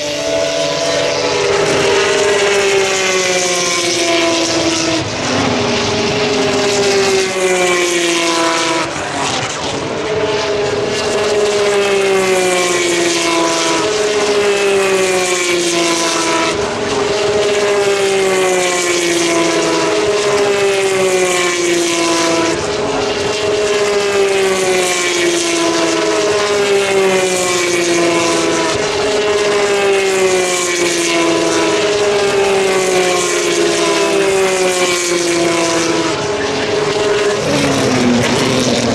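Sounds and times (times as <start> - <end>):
racing car engines passing: 0.0 - 38.9.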